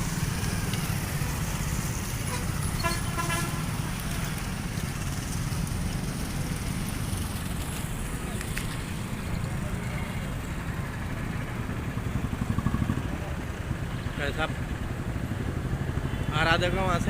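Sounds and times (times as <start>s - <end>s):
road traffic rumble: 0.0s - 17.0s
vehicle horn pulses: 2.2s - 3.8s.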